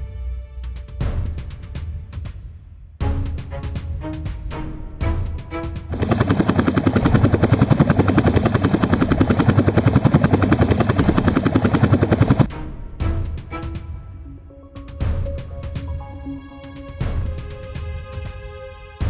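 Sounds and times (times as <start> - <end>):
dramatic orchestral music: 3.0 - 8.8, 10.2 - 19.0
helicopter rotor chopping: 5.9 - 12.5.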